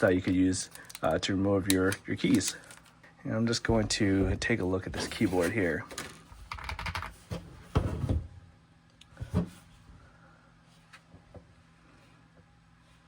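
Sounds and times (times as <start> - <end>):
keyboard rustling and knocking: 3.7 - 8.2.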